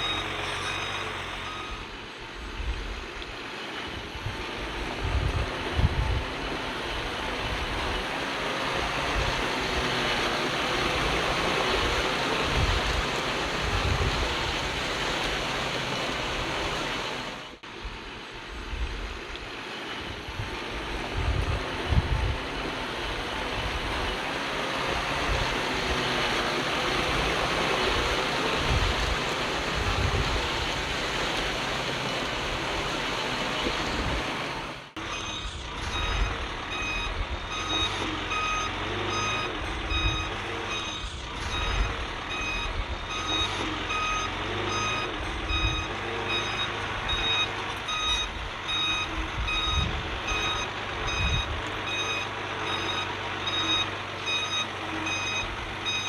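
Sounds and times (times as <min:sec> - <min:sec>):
reversing alarm beeping: 0:00.0 - 0:02.1, 0:31.7 - 0:56.0
diesel engine: 0:00.0 - 0:56.0
heavy machinery rushing noise: 0:00.0 - 0:56.0.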